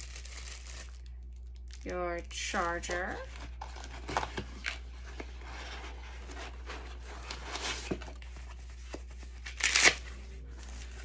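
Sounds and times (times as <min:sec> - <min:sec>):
packaging crinkling rip: 0:00.0 - 0:01.8, 0:09.3 - 0:11.0
packaging rustling: 0:00.0 - 0:01.9, 0:02.6 - 0:11.0.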